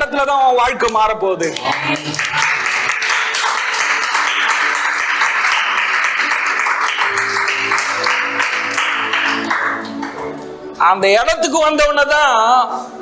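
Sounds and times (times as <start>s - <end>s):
congregation applauding: 1.4s - 10.6s
music with sustained notes: 1.7s - 13.0s.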